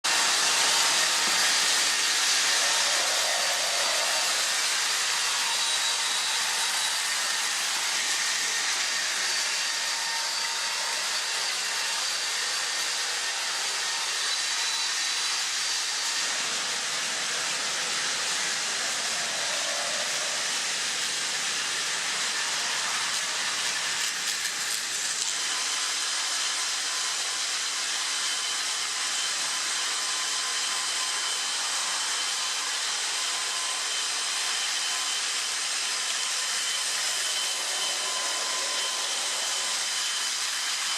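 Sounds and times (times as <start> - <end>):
toy train motors whirring: 0.1 - 40.9.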